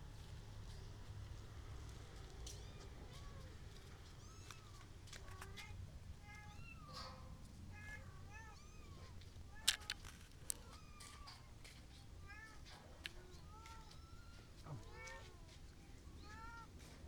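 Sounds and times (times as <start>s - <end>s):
kittens mewing: 12.2s - 16.8s.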